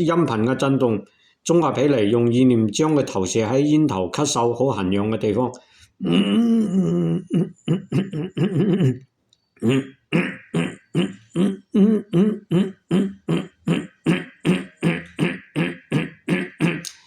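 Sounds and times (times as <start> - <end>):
man making buzzing throat grunts: 6.0 - 9.0, 9.6 - 17.0.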